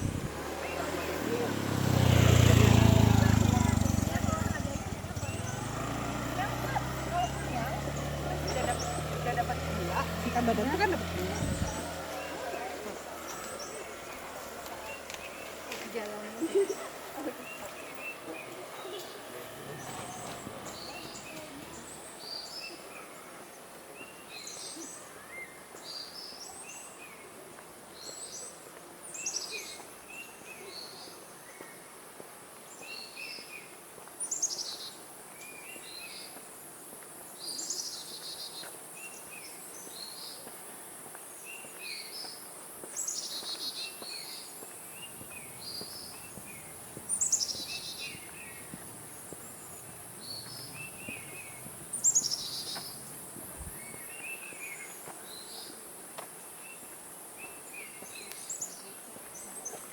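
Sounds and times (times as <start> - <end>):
birds chirping and trilling: 16.5 - 23.0, 43.2 - 55.0.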